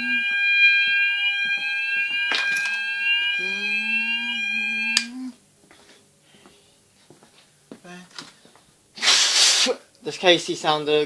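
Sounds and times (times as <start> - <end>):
alarm click: 0.0 - 5.2
fire alarm tones: 0.0 - 5.4
spray hiss: 9.0 - 9.8.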